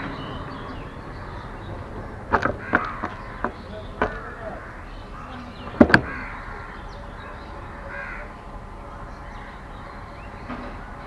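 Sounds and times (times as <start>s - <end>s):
crows cawing: 0.0s - 11.0s
faint small birds chirping: 0.0s - 11.0s
sharp clicks: 5.6s - 6.4s.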